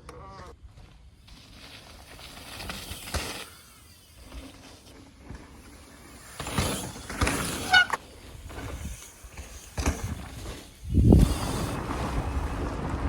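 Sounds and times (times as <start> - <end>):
tyre and wind rushing: 5.3 - 13.0
short high squeak: 7.4 - 8.0.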